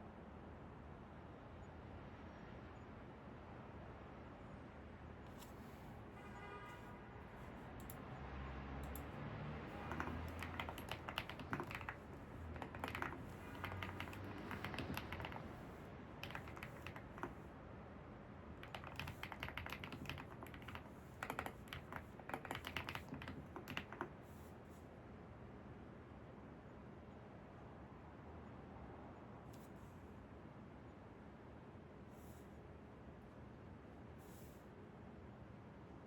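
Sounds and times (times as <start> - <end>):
keyboard key clicks: 9.7 - 17.4, 18.6 - 24.2.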